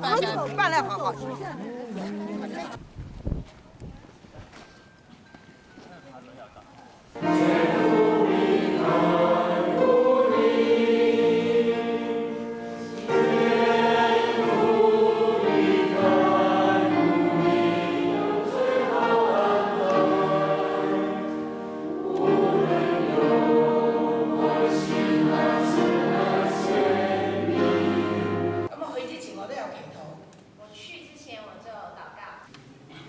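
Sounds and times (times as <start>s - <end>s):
choir singing a hymn: 7.2s - 28.7s.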